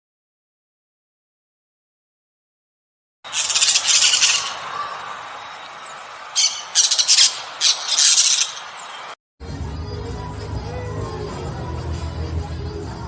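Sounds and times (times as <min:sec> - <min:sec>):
bird squawking harshly: 0:03.3 - 0:05.2, 0:06.3 - 0:08.8.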